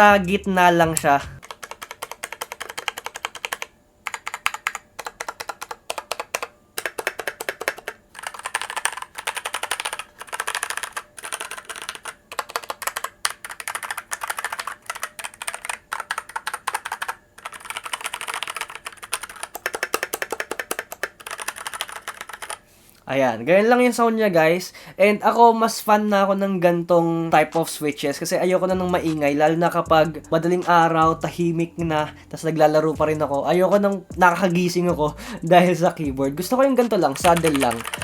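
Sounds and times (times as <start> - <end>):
mechanical keyboard typing: 0.9 - 22.6, 32.4 - 38.0.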